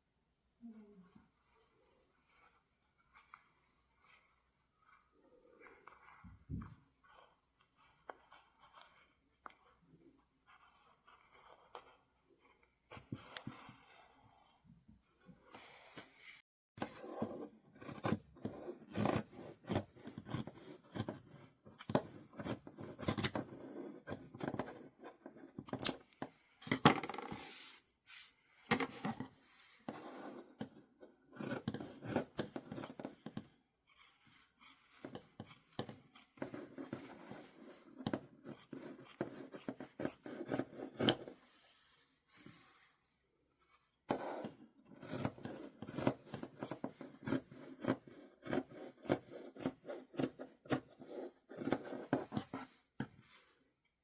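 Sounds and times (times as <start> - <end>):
scissors cutting cloth: 30.6 - 41.4, 44.9 - 52.4.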